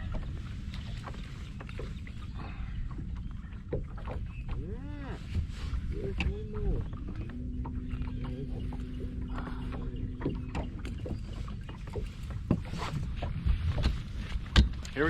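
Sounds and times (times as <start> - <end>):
hum: 0.0 - 14.7
boat engine rumble: 0.0 - 15.0
knocks and clicks: 7.0 - 12.6.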